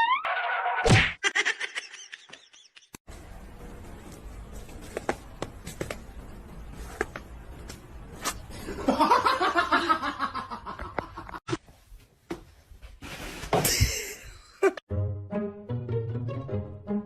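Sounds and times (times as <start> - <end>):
person laughing: 1.2 - 3.0, 13.6 - 14.8
light music with plucked strings: 14.9 - 17.0.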